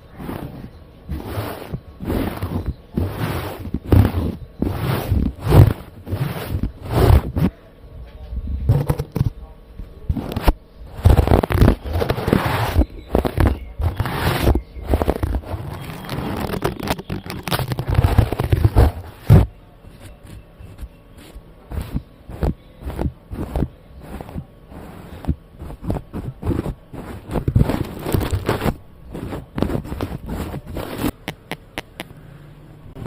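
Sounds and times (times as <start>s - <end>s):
scratching on a microphone: 0.0s - 7.6s, 8.5s - 9.4s, 10.0s - 32.1s
taps on a microphone: 31.2s - 32.1s.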